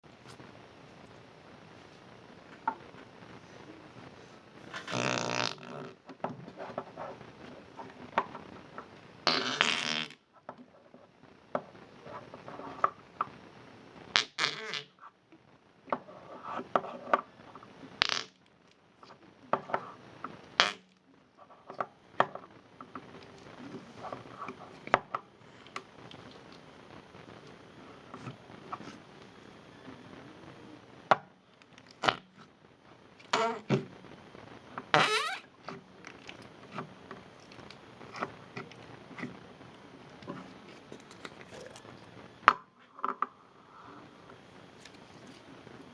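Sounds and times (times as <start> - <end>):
noise putty squelching: 34.9 - 42.6.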